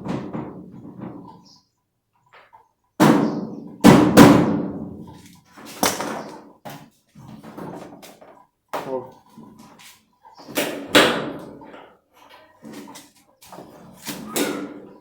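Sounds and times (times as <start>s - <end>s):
heavy bangs on metal machine: 3.0s - 4.9s.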